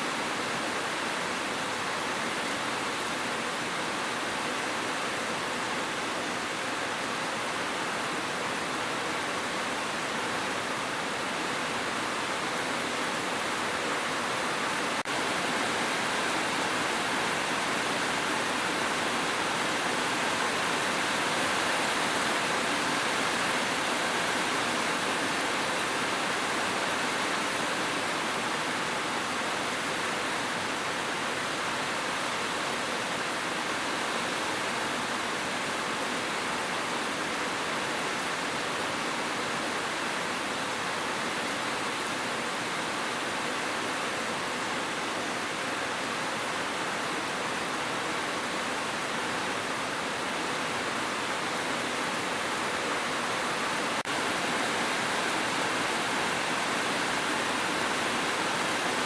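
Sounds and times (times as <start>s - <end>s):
heavy rain: 0.0s - 59.0s.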